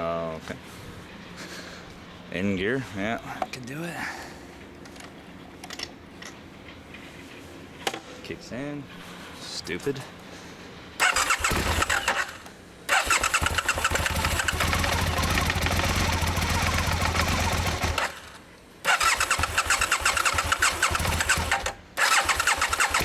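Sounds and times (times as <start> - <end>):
motorcycle engine ticking and knocking: 12.9 - 18.2, 18.9 - 23.0.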